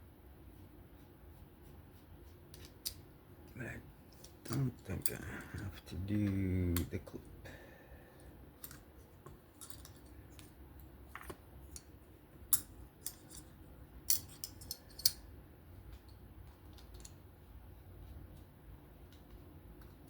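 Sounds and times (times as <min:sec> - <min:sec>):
metal clicks of knife parts: 0:14.1 - 0:15.2.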